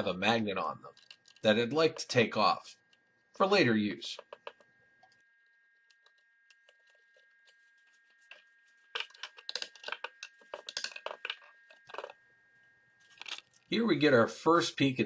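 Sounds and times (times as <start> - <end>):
tools clicking and scraping speaker: 0.9 - 1.5, 4.0 - 12.2.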